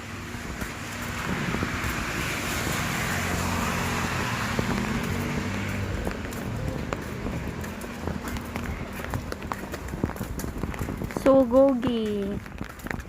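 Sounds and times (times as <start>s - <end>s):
car driving past: 1.1s - 9.7s.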